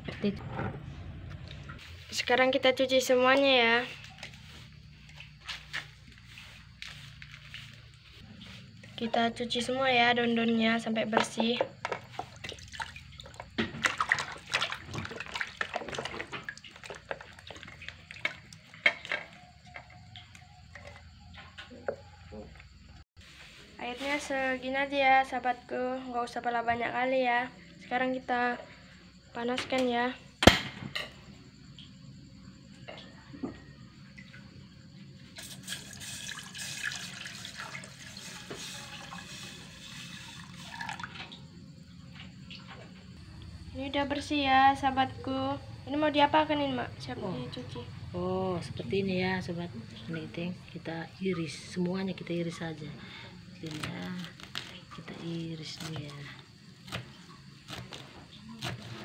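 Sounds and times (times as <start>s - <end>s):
hands washing leaves in water: 3.2s - 9.0s, 11.0s - 19.5s, 35.4s - 41.5s, 53.6s - 59.0s
water running from a tap: 35.4s - 41.4s.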